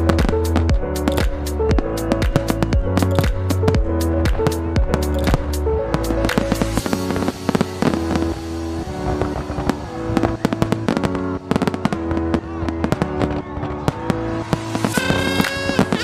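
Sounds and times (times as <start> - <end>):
fireworks bangs and crackles: 0.0 - 16.0
music with held notes: 0.0 - 16.0.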